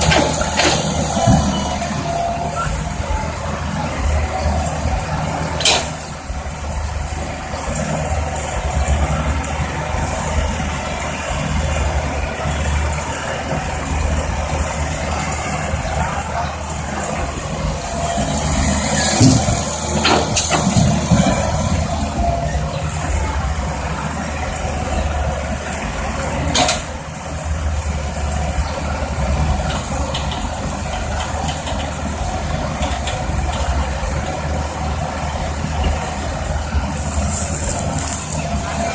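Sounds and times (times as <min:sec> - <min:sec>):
heavy diesel engine running: 0:00.0 - 0:38.9.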